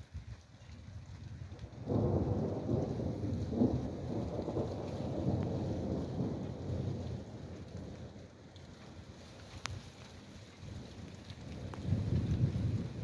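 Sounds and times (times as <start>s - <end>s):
rain falling: 0.0s - 13.0s
thunder rumbling: 1.7s - 8.3s, 11.5s - 13.0s.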